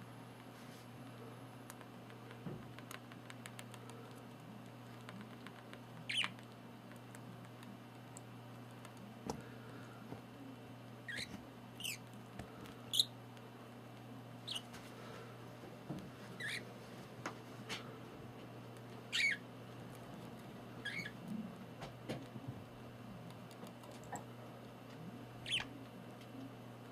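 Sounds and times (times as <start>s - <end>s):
steady low hum: 0.0s - 26.9s
budgerigar chirping: 6.1s - 6.4s, 11.1s - 12.0s, 12.9s - 13.1s, 14.4s - 14.6s, 16.4s - 16.6s, 19.1s - 19.4s, 20.8s - 21.2s, 25.4s - 25.7s.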